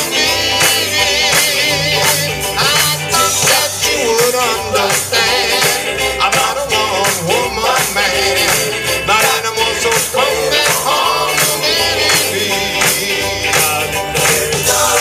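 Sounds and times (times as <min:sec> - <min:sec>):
bass line: 0:00.0 - 0:15.0
song with singing over a band: 0:00.0 - 0:15.0
steady drum beat: 0:00.0 - 0:15.0.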